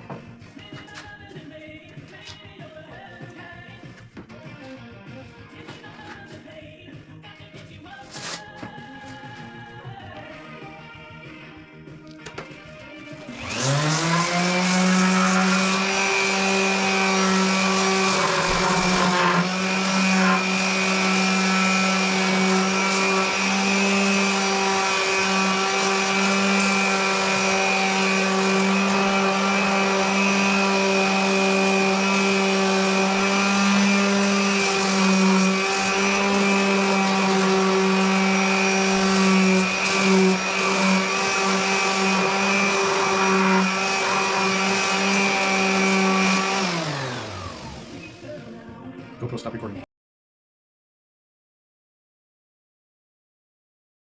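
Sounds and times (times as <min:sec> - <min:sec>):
electric sander motor whine: 0:13.3 - 0:48.1.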